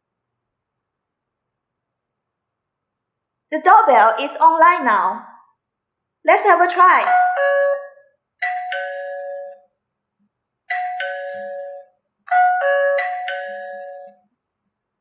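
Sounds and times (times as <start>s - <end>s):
two-note doorbell chime: 7.0s - 9.7s, 10.7s - 14.2s.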